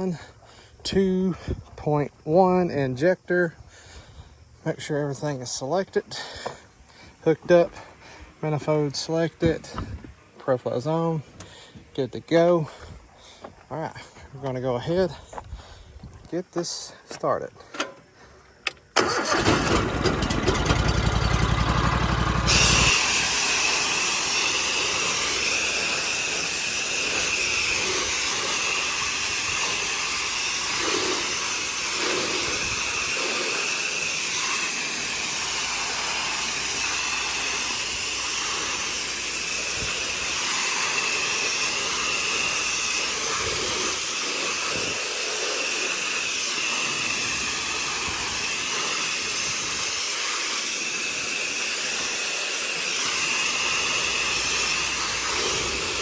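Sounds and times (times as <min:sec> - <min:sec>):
high-pressure spray hissing: 0:19.0 - 0:56.0
pressure washer engine running: 0:19.0 - 0:56.0
high whine: 0:19.6 - 0:45.0.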